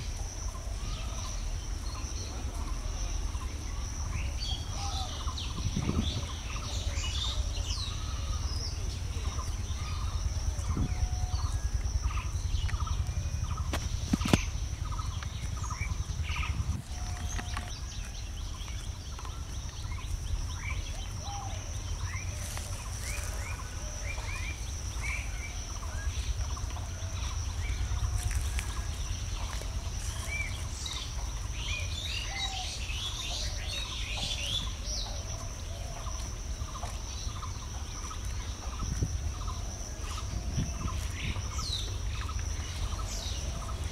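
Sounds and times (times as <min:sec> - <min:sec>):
low rumble: 0:00.0 - 0:32.2.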